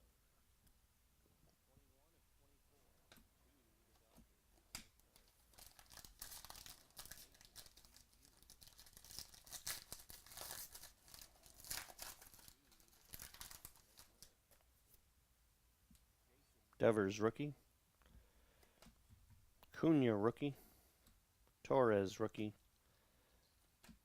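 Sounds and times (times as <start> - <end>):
foil wrappers crinkling and tearing: 5.1 - 14.3.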